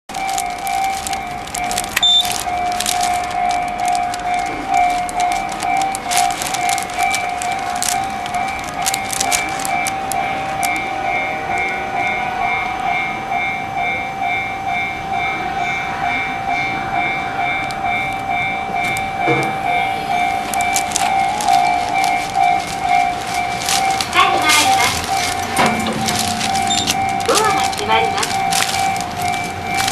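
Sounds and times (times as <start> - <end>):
level-crossing warning bell: 0.1 - 29.9.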